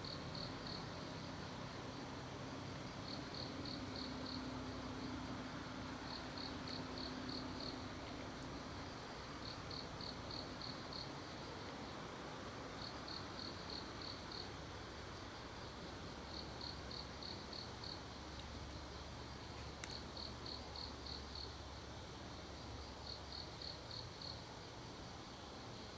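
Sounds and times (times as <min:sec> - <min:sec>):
insect chirping: 0:00.0 - 0:01.0, 0:02.8 - 0:05.2, 0:05.9 - 0:07.8, 0:08.9 - 0:11.5, 0:12.8 - 0:21.7, 0:23.0 - 0:24.7
faint outdoor hiss: 0:00.0 - 0:25.9.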